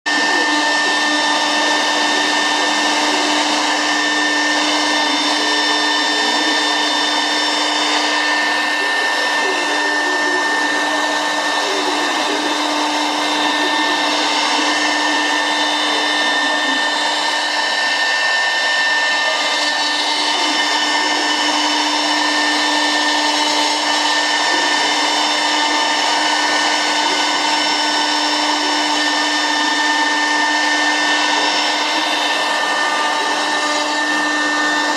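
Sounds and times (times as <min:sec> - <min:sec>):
router spindle whine: 0:00.0 - 0:34.9
hiss of wood cutting: 0:00.1 - 0:34.9.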